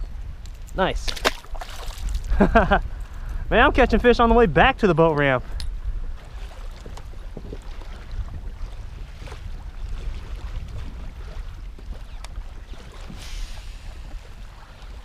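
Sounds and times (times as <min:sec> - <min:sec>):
wind buffeting microphone: 0:00.0 - 0:15.0
water lapping against hull: 0:01.1 - 0:03.4, 0:05.4 - 0:15.0.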